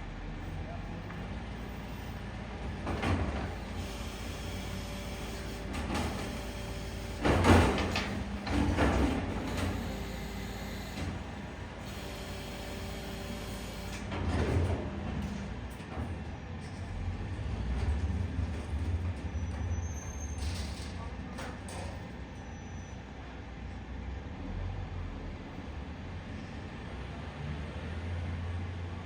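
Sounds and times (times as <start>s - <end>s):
heavy machinery humming: 0.1s - 19.9s.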